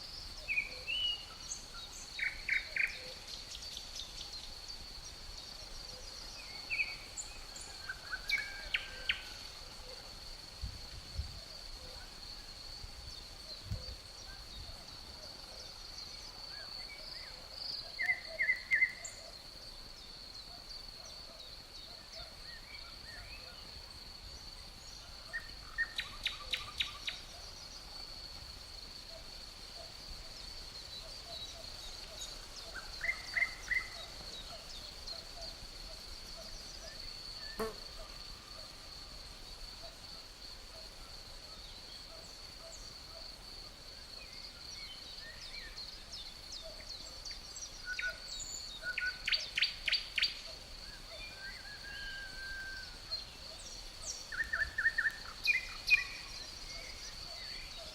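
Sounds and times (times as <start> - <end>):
crickets droning: 0.0 - 57.9.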